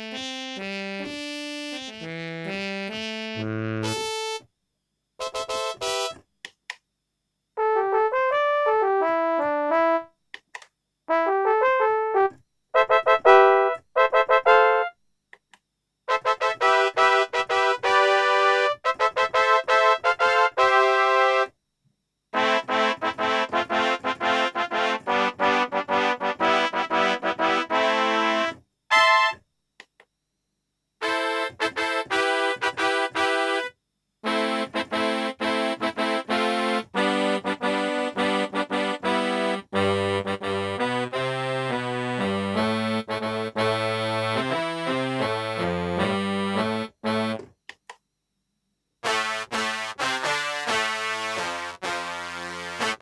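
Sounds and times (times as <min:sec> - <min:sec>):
synthesizer notes and chords: 0:00.0 - 0:04.4, 0:05.2 - 0:06.2, 0:11.2 - 0:15.0, 0:22.4 - 0:29.4, 0:49.0 - 0:53.0.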